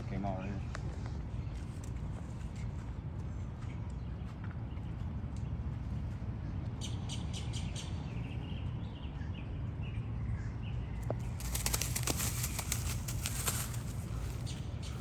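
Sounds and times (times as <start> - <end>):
steady low rumble: 8.0 - 15.0
rustling and flapping: 11.2 - 15.0.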